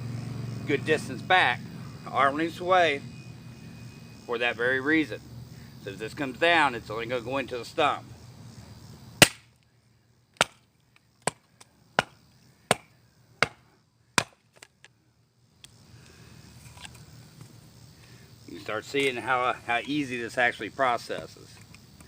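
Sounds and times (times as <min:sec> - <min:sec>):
hatchet chopping log: 0:09.2 - 0:09.5, 0:10.4 - 0:10.6, 0:11.2 - 0:11.4, 0:12.0 - 0:14.4.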